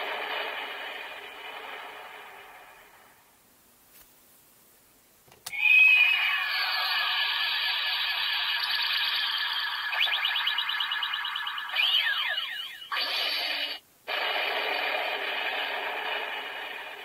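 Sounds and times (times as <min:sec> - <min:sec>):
falling tones: 0:05.5 - 0:17.0.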